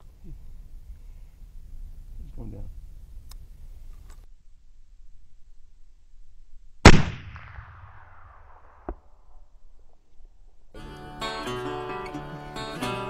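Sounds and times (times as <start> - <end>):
rifle shot with echo: 6.8 - 9.4.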